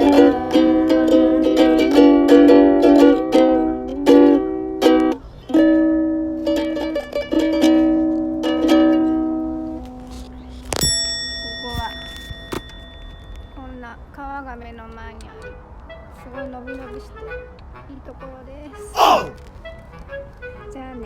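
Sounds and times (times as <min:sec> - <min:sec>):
ukulele strumming: 0:00.0 - 0:09.9.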